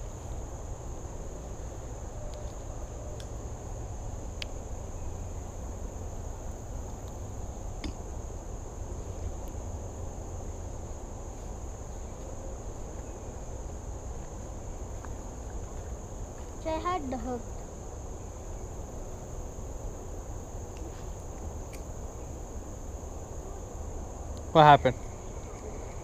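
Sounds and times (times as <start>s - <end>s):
insects chirping: 0.0s - 26.0s.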